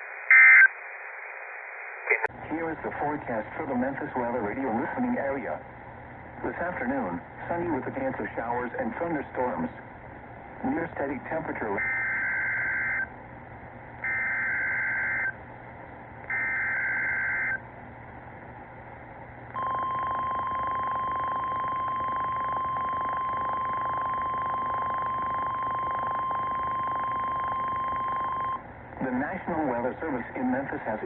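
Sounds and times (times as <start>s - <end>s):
steady alarm tone: 11.8s - 13.1s, 14.0s - 15.4s, 16.3s - 17.6s, 19.6s - 28.7s.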